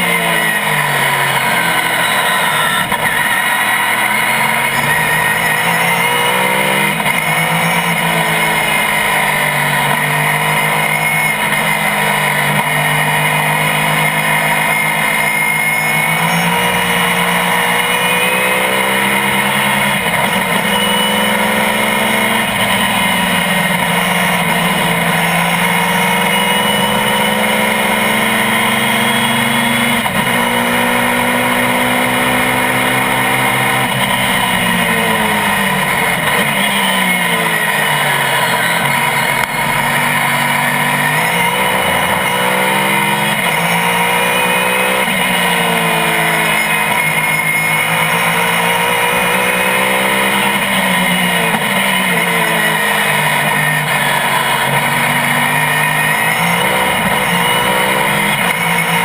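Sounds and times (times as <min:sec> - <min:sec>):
racing car engine revving: 0:00.0 - 0:59.0.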